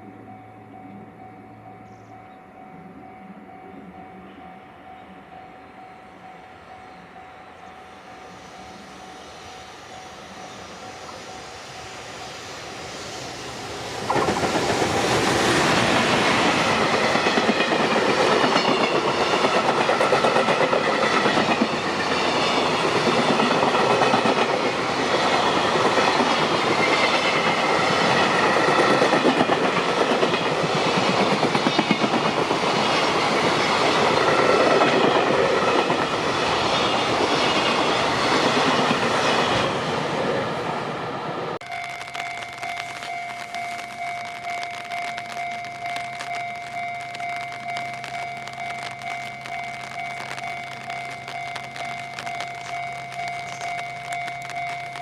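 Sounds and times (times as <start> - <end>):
freight train passing: 0.0 - 55.0
train wheels clacking on rail joints: 14.0 - 39.6.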